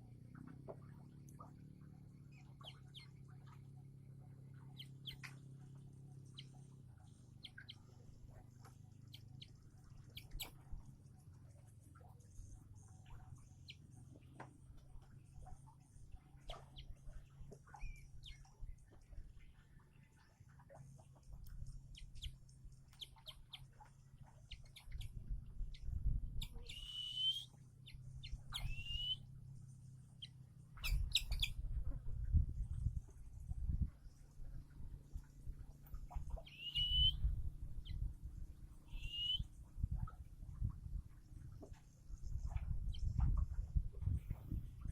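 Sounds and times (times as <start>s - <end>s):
low steady hum: 0.0s - 44.9s
young eagle chirping: 10.2s - 10.5s, 24.5s - 29.2s, 30.2s - 31.6s, 36.4s - 37.3s, 38.8s - 39.5s
rising squealing calls: 36.4s - 37.2s.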